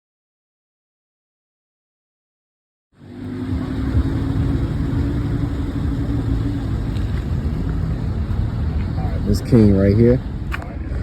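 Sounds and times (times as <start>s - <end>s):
car engine rumbling: 3.0s - 11.0s.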